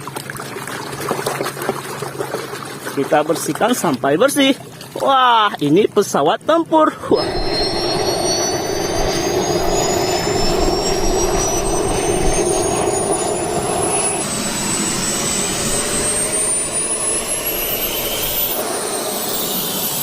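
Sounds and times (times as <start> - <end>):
jet engine whine: 7.0 - 20.0.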